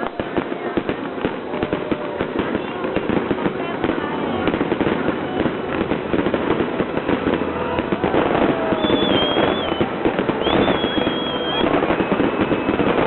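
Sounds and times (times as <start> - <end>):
fireworks cracks and bangs: 0.0 - 13.0
firework high whistle: 4.8 - 13.0.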